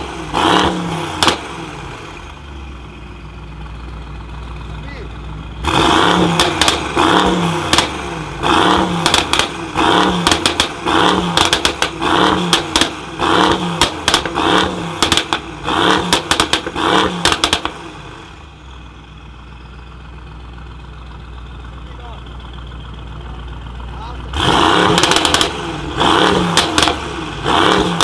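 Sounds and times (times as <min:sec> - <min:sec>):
exhaust crackles and pops: 0:00.0 - 0:02.2, 0:05.6 - 0:18.2, 0:24.3 - 0:28.0
car engine revving: 0:00.0 - 0:03.0, 0:03.6 - 0:18.6, 0:21.0 - 0:28.0
car engine idling: 0:00.0 - 0:28.0.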